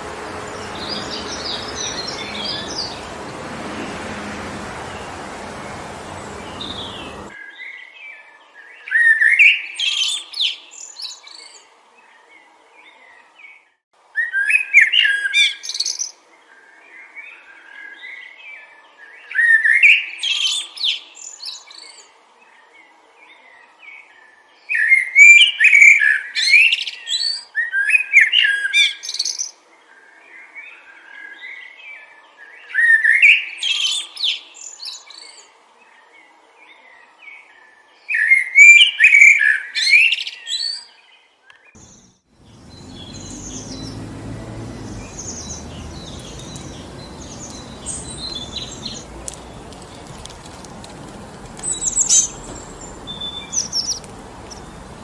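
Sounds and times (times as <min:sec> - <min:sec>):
wind noise: 0:00.0 - 0:07.4, 0:42.4 - 0:55.0
songbird singing: 0:00.0 - 0:07.6, 0:30.6 - 0:55.0.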